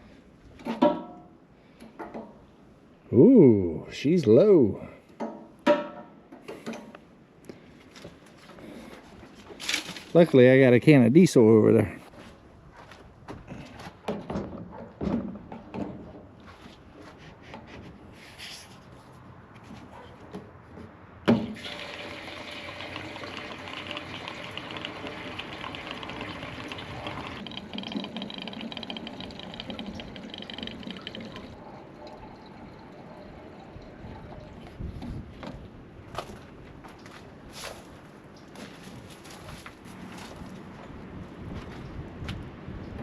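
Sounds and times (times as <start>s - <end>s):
fuel pouring into tank: 21.4s - 34.9s.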